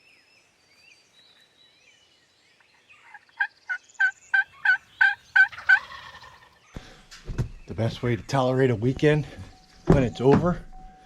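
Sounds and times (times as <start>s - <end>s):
faint songbird chirping: 0.0s - 11.0s
turkey yelps: 3.0s - 6.6s.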